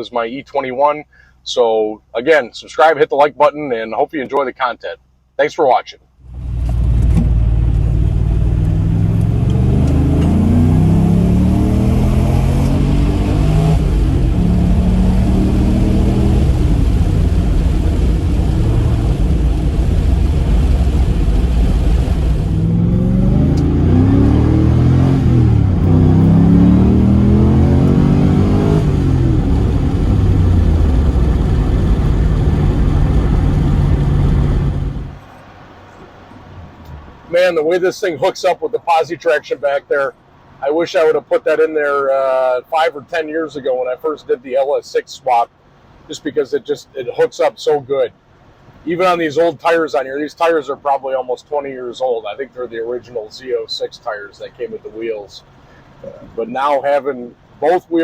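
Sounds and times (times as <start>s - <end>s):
car engine accelerating hard: 6.2s - 37.5s.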